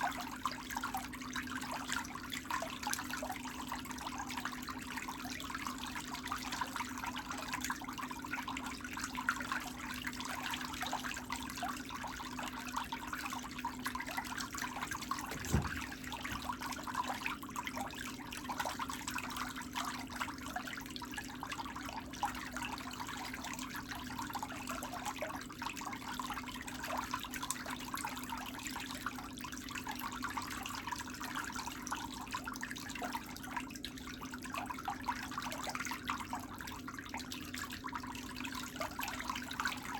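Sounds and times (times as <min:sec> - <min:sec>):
water trickling: 0:00.0 - 0:39.9
soft thump: 0:15.3 - 0:16.5.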